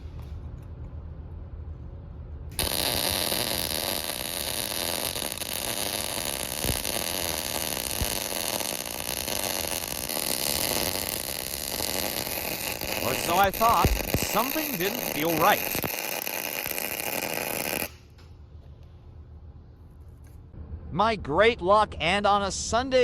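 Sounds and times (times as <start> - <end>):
welding arc crackling hiss: 2.6 - 18.2.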